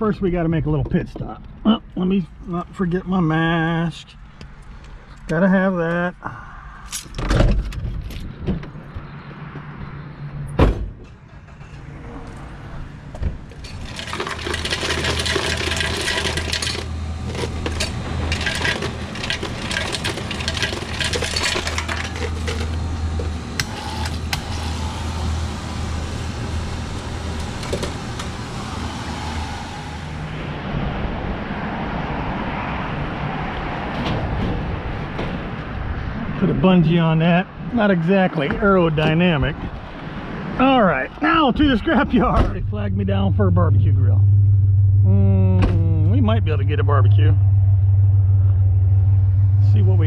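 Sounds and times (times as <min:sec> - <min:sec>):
truck engine and road noise: 0:00.0 - 0:50.0
door slam: 0:10.6 - 0:11.0
clinks and rattles: 0:13.5 - 0:23.3.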